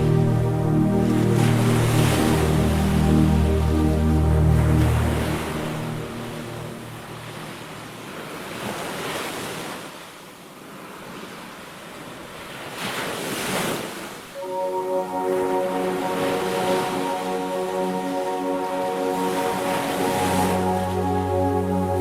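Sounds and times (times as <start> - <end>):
soft instrumental music: 0.0 - 8.2, 14.4 - 22.0
ocean waves washing ashore: 0.0 - 22.0.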